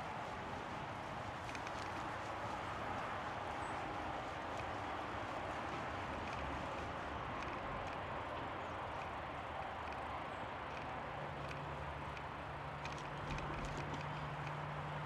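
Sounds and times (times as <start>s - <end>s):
bicycle rolling on pavement: 0.2s - 15.0s
faint ticks: 1.4s - 2.1s, 5.6s - 15.0s.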